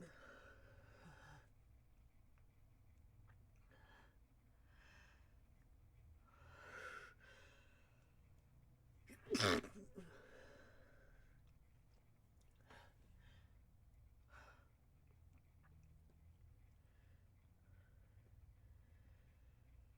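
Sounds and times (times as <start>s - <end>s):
stifled sneeze: 9.1s - 10.6s.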